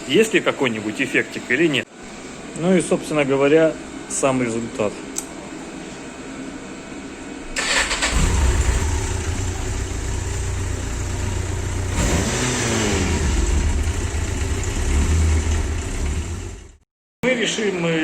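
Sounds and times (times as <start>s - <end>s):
motorcycle engine starting and running: 7.6s - 16.8s.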